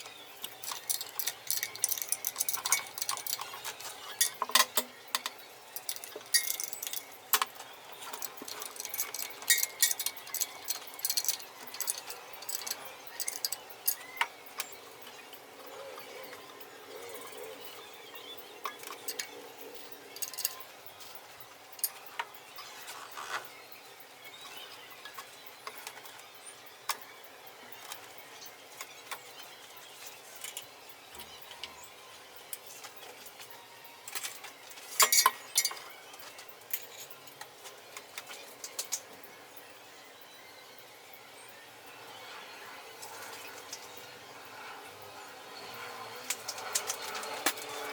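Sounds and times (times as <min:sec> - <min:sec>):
metal tools clinking: 0:00.6 - 0:14.2, 0:18.6 - 0:21.2, 0:34.1 - 0:37.2.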